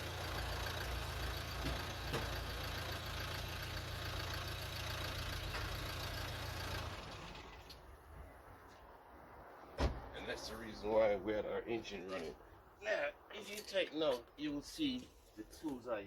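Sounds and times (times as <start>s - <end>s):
car engine idling: 0.0s - 7.9s.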